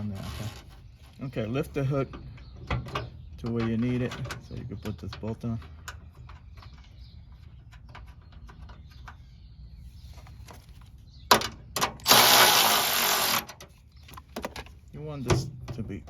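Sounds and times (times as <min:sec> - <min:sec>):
cordless ratchet spinning bolt: 0:12.0 - 0:13.5.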